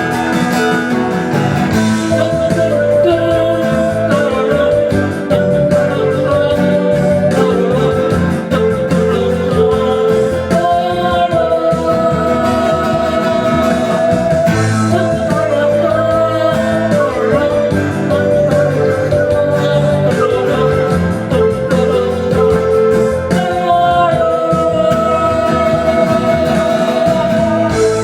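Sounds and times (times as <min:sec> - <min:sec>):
guitar accompaniment: 0:00.0 - 0:28.0
person singing: 0:00.0 - 0:28.0.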